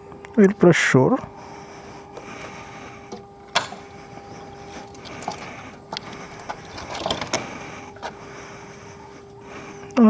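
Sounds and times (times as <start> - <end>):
steady faint hum: 0.0 - 10.0
sharp clicks and knocks: 3.1 - 8.2.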